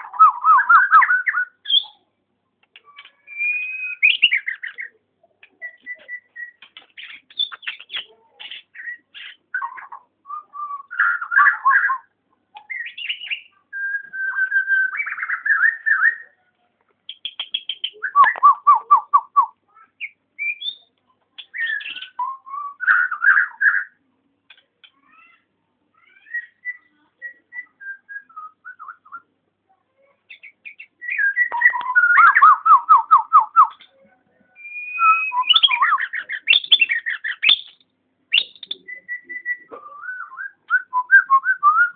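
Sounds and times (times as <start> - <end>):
myna whistling and calling: 3.1 - 4.8, 30.3 - 33.8, 34.6 - 41.9.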